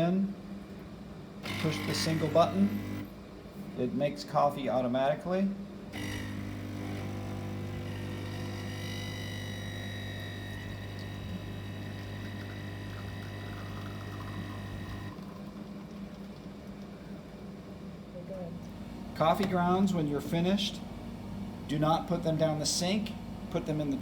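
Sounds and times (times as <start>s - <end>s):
espresso machine pump humming: 1.4s - 3.1s, 6.0s - 17.2s.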